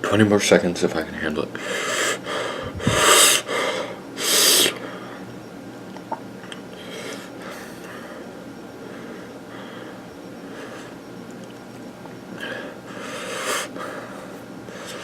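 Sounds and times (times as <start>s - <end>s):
man breathing hard: 1.6s - 5.3s, 6.8s - 11.0s, 12.4s - 15.0s.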